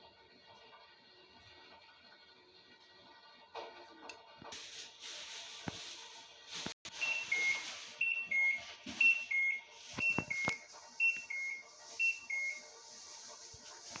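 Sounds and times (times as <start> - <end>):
washing machine beeping: 6.9 - 14.0.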